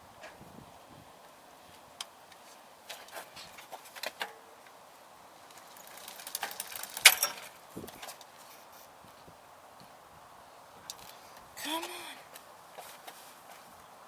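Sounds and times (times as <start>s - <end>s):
bicycle derailleur and chain clicking: 2.0s - 8.4s, 10.9s - 11.4s.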